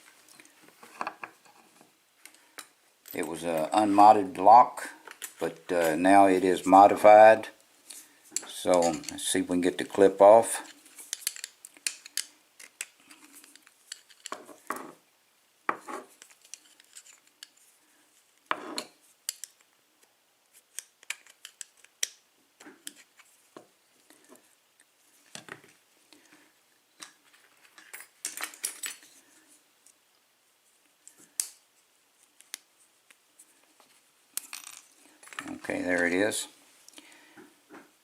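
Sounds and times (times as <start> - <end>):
small metal clicks and scrapes: 7.9 - 9.3, 10.6 - 14.7, 16.1 - 17.6, 18.8 - 19.7, 20.7 - 22.2.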